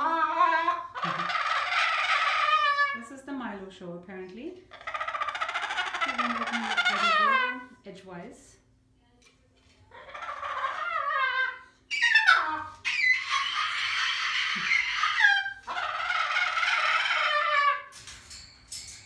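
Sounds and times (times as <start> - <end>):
cockatoo screeching: 0.0 - 3.0, 4.7 - 7.8, 9.9 - 18.0.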